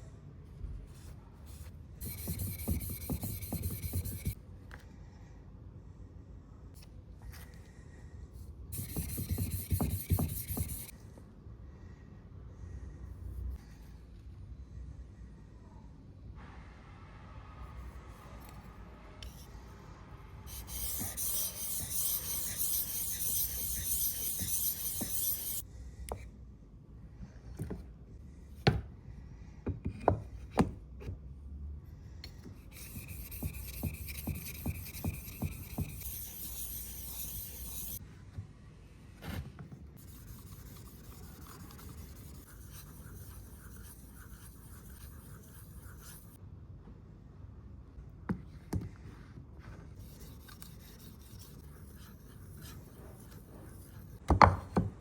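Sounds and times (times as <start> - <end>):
hand rubbing or filing strokes: 2.0 - 4.4, 8.8 - 10.9, 20.5 - 25.6, 32.7 - 38.0, 40.0 - 46.4.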